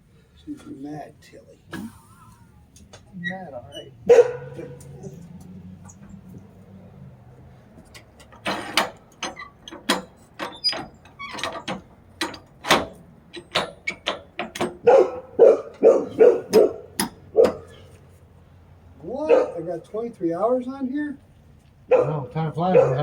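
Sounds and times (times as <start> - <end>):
dog barking sharply: 4.0 - 5.1, 14.8 - 17.8, 19.2 - 19.7, 21.9 - 23.0.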